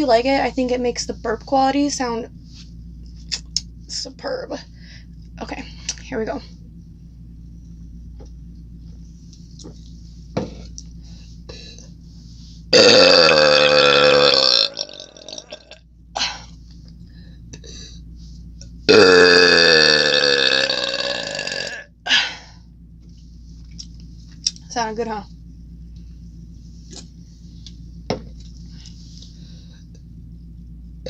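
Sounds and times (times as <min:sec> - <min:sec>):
woman burping: 0:12.8 - 0:16.5, 0:18.9 - 0:22.5.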